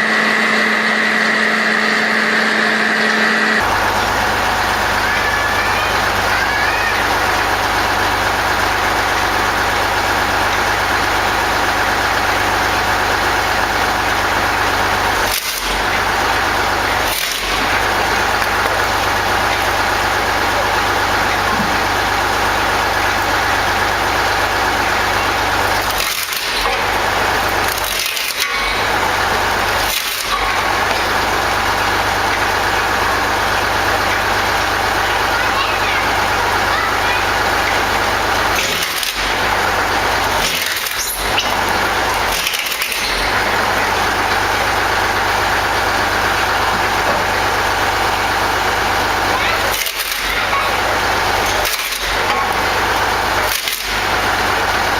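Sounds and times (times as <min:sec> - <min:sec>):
wood processor engine running: 0:00.0 - 0:54.9.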